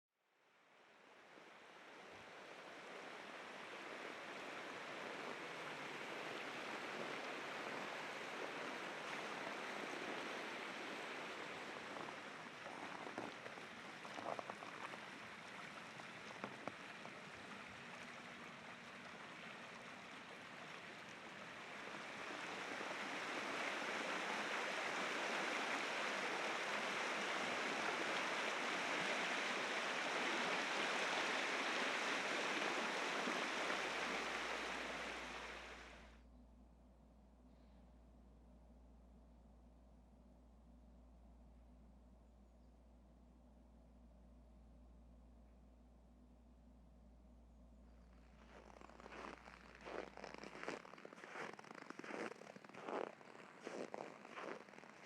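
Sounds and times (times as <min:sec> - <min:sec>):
water rushing over rapids: 0:01.0 - 0:36.1.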